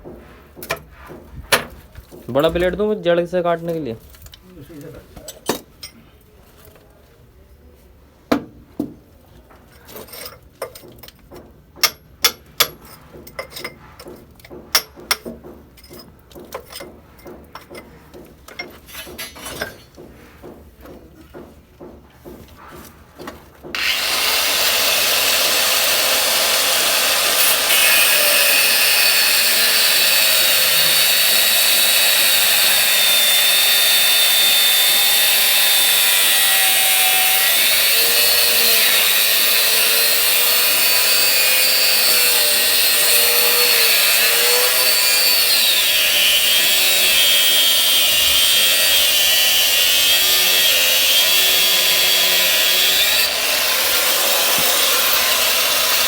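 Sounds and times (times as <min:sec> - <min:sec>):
angle grinder cutting metal pipe: 0:23.8 - 0:56.0.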